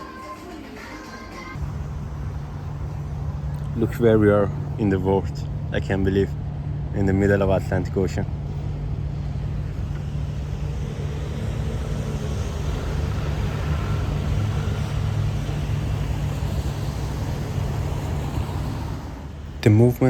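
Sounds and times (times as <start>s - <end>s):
engine running steadily: 1.6s - 19.8s.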